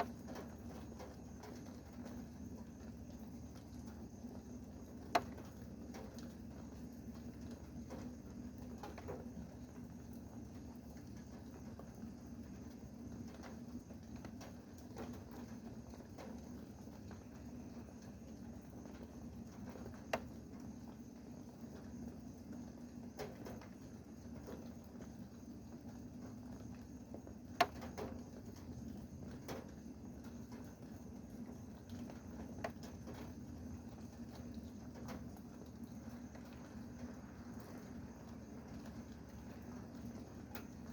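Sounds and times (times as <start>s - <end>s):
faint steady low hum: 0.0s - 40.9s
rain dripping and pattering: 0.0s - 40.9s.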